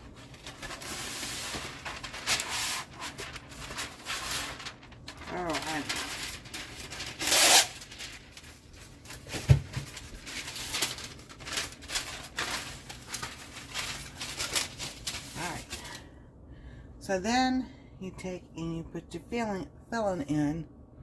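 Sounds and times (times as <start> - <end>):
food preparation rubbing and scraping: 0.0 - 15.9.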